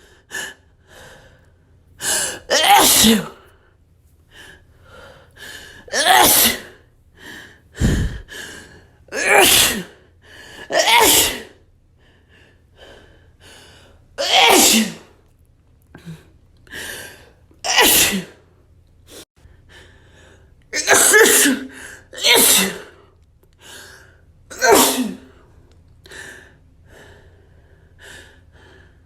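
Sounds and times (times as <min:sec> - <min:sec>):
person sneezing: 0:02.1 - 0:03.4, 0:05.9 - 0:06.8, 0:07.8 - 0:08.3, 0:09.1 - 0:10.0, 0:10.7 - 0:11.6, 0:14.2 - 0:15.2, 0:17.6 - 0:18.4, 0:20.8 - 0:23.0, 0:24.5 - 0:25.4
catching breaths: 0:07.2 - 0:09.0.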